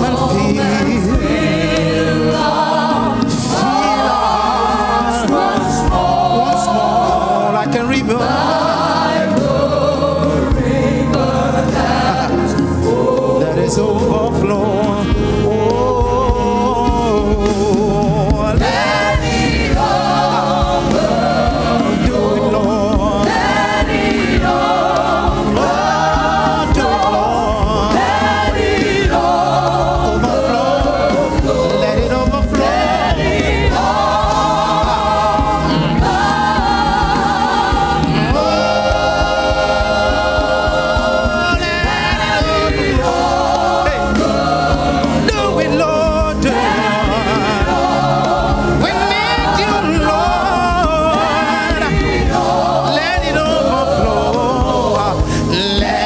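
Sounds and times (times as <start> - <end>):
band accompaniment: 0.0 - 56.0
gospel choir singing: 0.0 - 56.0.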